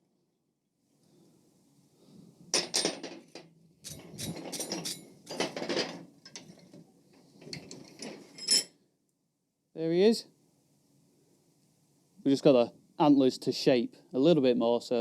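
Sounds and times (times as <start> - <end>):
steel tools clinking and scraping: 3.8 - 6.8, 7.4 - 8.8.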